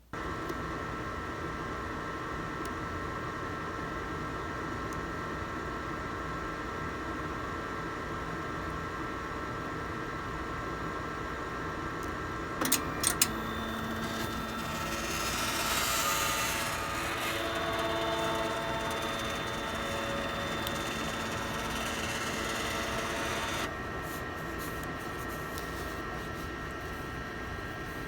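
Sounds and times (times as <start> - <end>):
printer stepper motors whining: 12.6 - 23.9.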